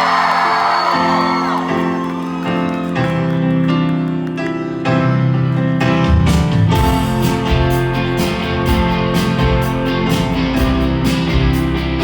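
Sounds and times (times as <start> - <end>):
crowd whooping and cheering: 0.0 - 3.6
live rock band chords: 6.0 - 12.0.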